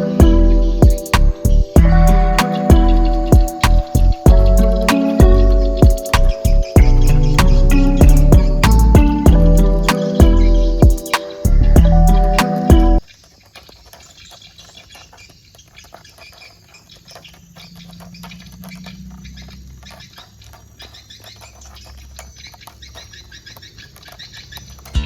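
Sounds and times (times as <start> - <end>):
low steady hum: 0.0 - 10.9.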